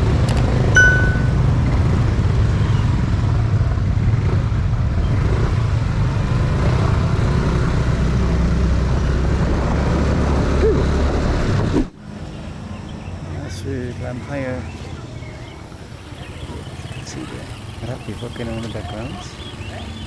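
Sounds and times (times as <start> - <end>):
road and wind noise: 0.0 - 20.0
motorcycle engine running: 14.4 - 20.0.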